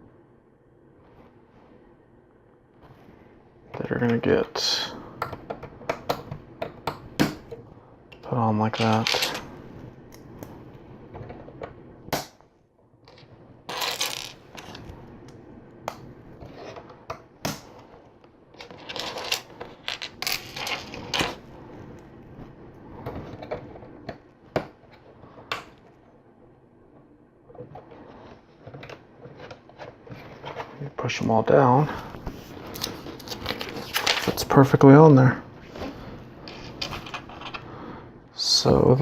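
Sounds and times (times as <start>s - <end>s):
plastic parts rattling: 36.5s - 37.6s.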